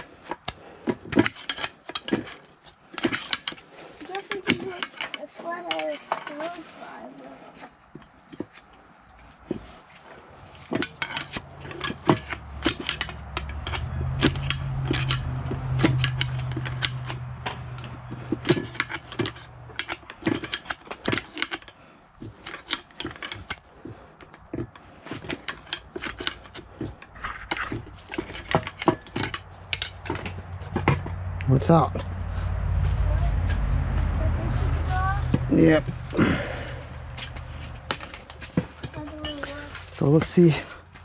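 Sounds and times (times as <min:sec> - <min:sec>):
hand tools clinking on bolts: 0:00.0 - 0:06.7, 0:10.5 - 0:31.1, 0:35.3 - 0:41.0
low hum: 0:29.4 - 0:38.5.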